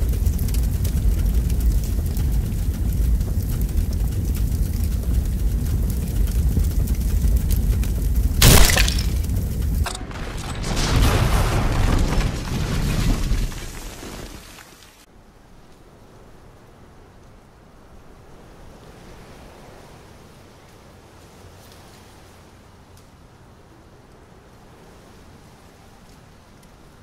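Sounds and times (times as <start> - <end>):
deep rumbling boom: 0.0 - 13.5
sudden loud crash: 8.4 - 13.6.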